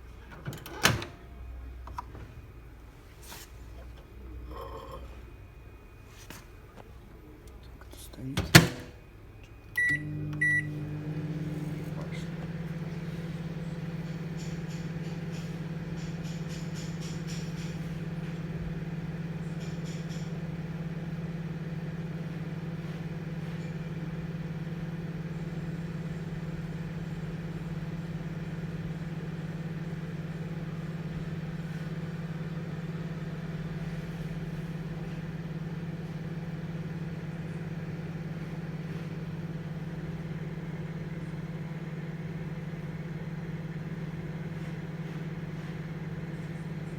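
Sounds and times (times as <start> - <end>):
microwave oven humming: 0.0 - 46.9
microwave beep: 9.6 - 46.9.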